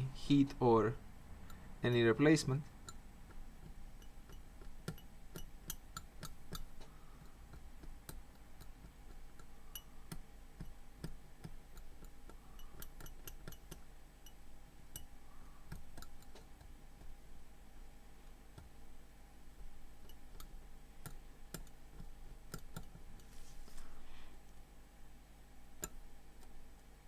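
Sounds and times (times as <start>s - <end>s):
low steady hum: 0.0s - 27.0s
small metal tool clicks and taps: 2.8s - 15.1s, 15.7s - 17.2s, 20.0s - 23.3s, 25.8s - 26.5s.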